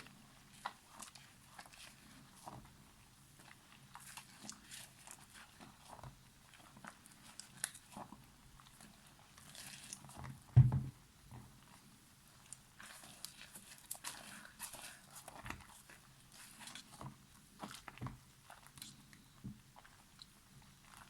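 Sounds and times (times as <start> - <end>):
soap lathered by hand: 0.0 - 10.6, 11.6 - 18.8
heavy thump: 10.6 - 10.9.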